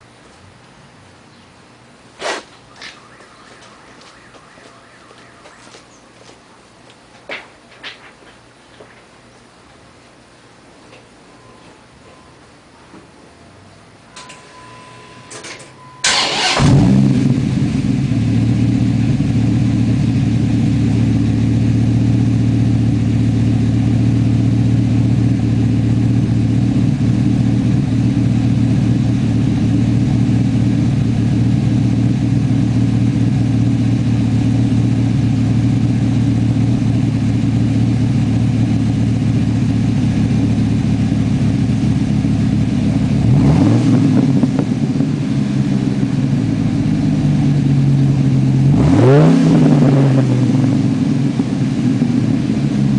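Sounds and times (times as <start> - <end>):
car engine starting and idling: 14.0 - 52.9
engine revving: 16.0 - 19.6, 42.9 - 45.2, 48.5 - 51.8.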